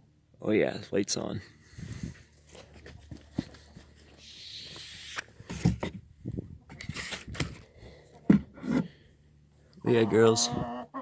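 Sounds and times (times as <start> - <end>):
footsteps in wood shavings: 2.0 - 5.6.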